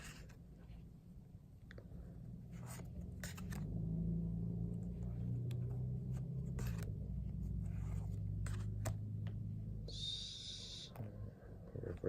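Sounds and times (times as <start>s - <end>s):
cards sliding and scraping: 0.0s - 0.4s, 2.5s - 3.7s, 5.6s - 9.0s
steady low hum: 0.0s - 12.0s.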